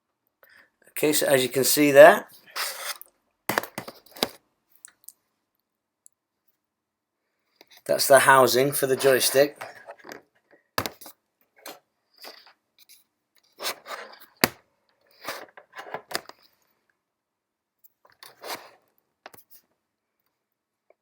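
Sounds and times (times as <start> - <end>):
hands handling keyboard parts: 2.9 - 5.0, 8.9 - 16.5.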